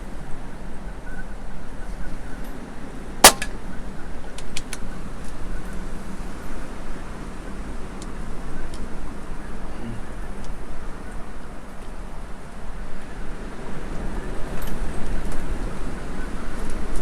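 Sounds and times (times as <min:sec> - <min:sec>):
air rifle shot: 0:03.2 - 0:03.6.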